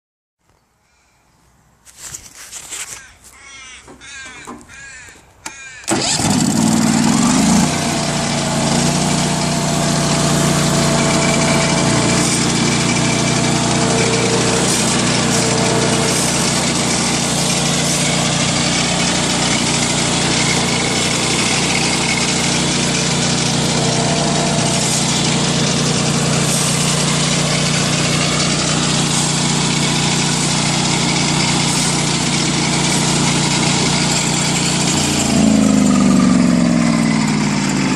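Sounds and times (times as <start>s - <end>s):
bird calls: 2.9s - 5.9s
mill motor humming: 6.1s - 37.9s.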